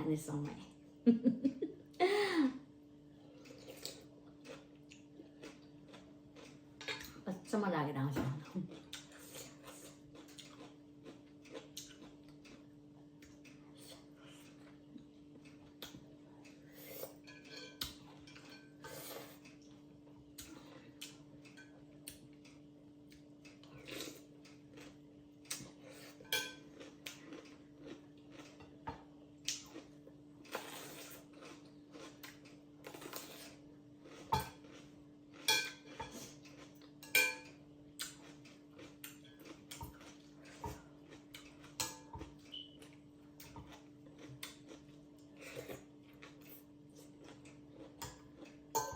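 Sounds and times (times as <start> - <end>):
cutlery clinking against a dish: 17.1 - 19.0, 26.1 - 26.7, 34.3 - 34.6, 35.4 - 36.2, 37.0 - 37.6, 41.6 - 42.4, 48.0 - 48.9.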